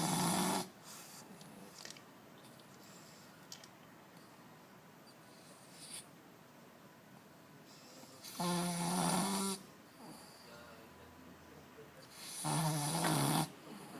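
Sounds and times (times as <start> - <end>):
dog snoring loudly: 0.0 - 0.8, 8.2 - 10.3, 12.1 - 13.9
faint breath: 2.7 - 3.5, 7.6 - 8.2.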